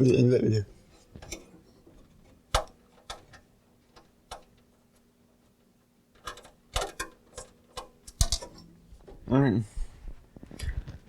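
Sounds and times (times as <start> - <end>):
clicks and knocks of hardware: 6.1 - 8.7.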